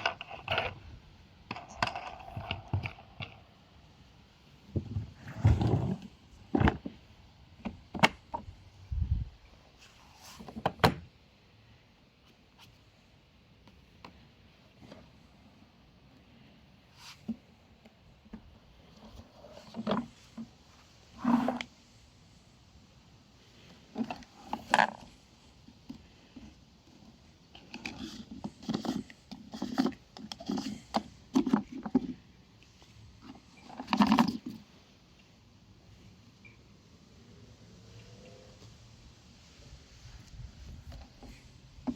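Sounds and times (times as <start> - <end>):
vacuum parts knocking and clicking: 1.5 - 3.4, 4.7 - 8.5, 27.6 - 32.2.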